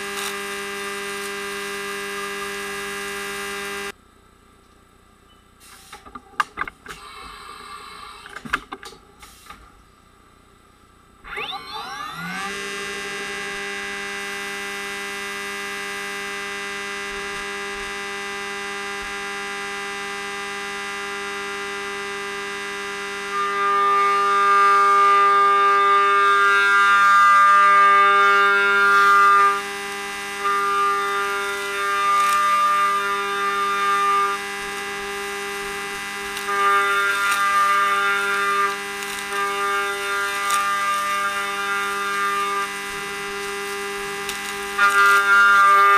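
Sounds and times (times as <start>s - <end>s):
machine spindle whine: 11.2s - 14.2s, 23.2s - 45.9s
high metal cutting tone: 11.3s - 45.9s.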